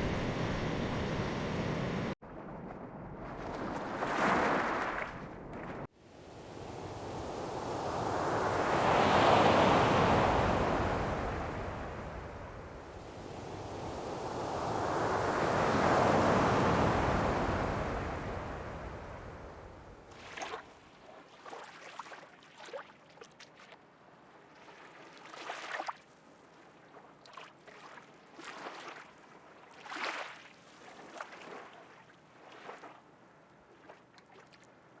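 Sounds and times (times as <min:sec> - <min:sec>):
water splashing and sloshing: 0:00.0 - 0:12.0, 0:19.5 - 0:35.0
wave washing: 0:00.0 - 0:22.8.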